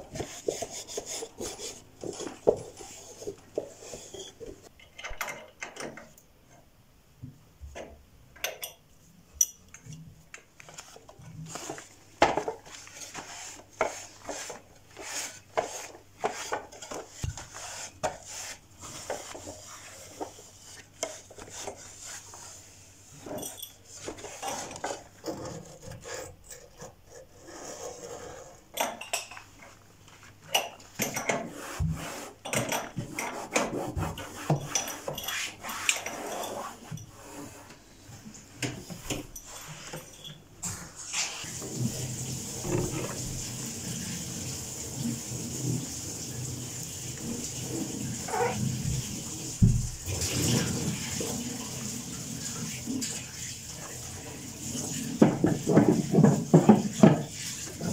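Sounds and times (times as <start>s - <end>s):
dishes and utensils clinking: 23.2s - 25.1s, 28.7s - 29.5s.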